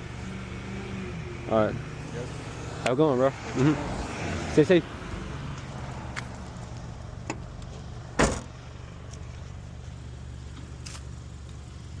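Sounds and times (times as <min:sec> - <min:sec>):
car engine idling: 0:00.0 - 0:12.0
heavy thud: 0:08.2 - 0:08.5.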